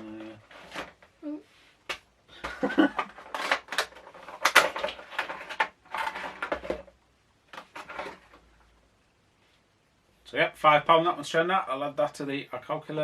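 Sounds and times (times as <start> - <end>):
cardboard packaging rustling: 2.5 - 6.9, 7.5 - 8.6.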